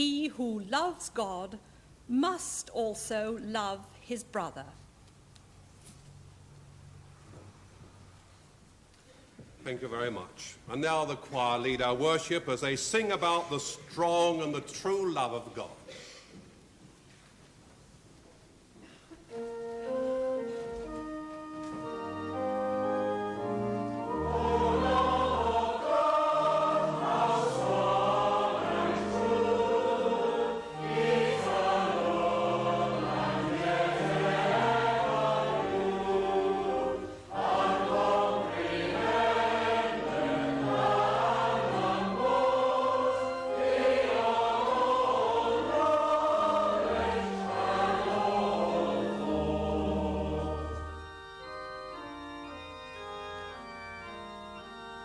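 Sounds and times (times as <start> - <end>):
organ: 19.2 - 55.0
choir singing a hymn: 21.7 - 52.6.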